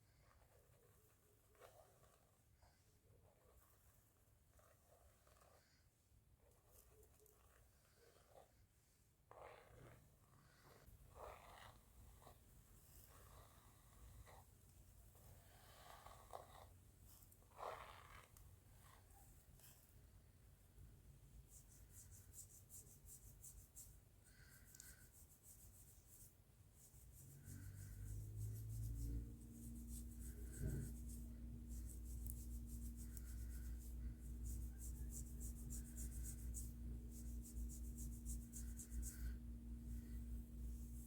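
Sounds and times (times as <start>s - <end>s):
low steady hum: 18.4s - 41.0s
fingers rubbing hair: 21.3s - 41.0s.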